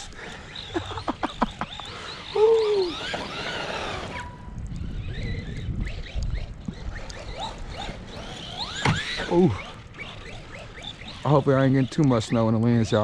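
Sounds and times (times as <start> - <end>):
rc truck motor whining: 0.0 - 13.0.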